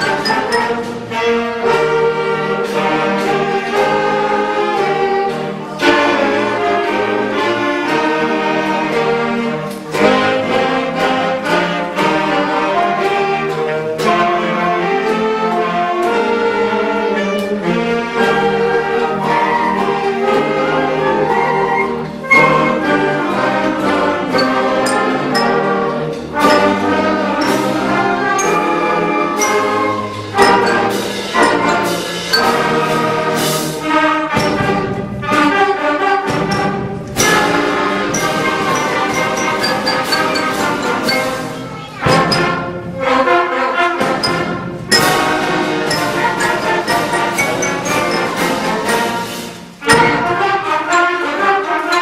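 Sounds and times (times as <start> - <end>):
sharp percussion strikes: 0.0 - 4.0, 22.2 - 35.5, 36.3 - 43.1, 44.0 - 52.0
concert band playing: 0.0 - 52.0
trumpets and trombones: 0.0 - 52.0.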